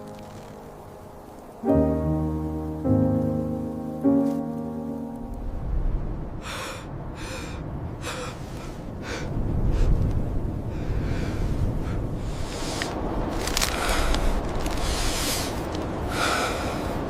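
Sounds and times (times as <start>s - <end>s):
low rumbling noise: 0.0s - 17.0s
person gasping breaths: 6.4s - 10.0s, 13.7s - 17.0s.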